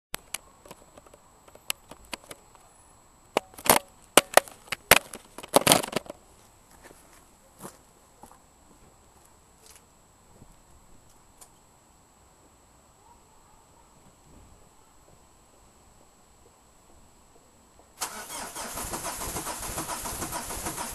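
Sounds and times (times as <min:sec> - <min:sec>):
sharp clicks and knocks: 0:03.4 - 0:06.2.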